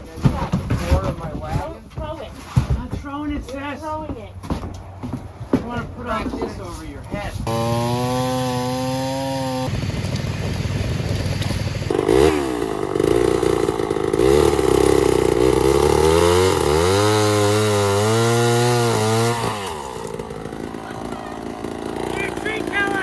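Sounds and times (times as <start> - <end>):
chainsaw engine idling and revving: 7.4 - 23.0.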